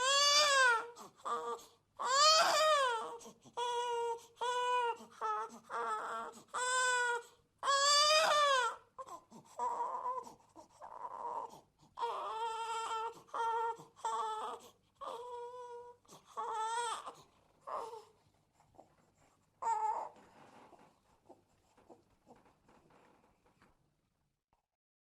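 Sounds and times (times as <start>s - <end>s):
baby crying: 0.0s - 18.1s, 19.6s - 20.2s.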